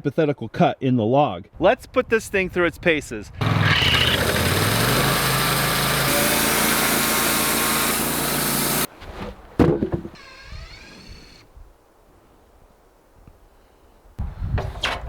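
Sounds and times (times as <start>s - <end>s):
bandsaw mill engine: 3.4s - 8.9s
saw blade hissing through log: 3.4s - 8.9s.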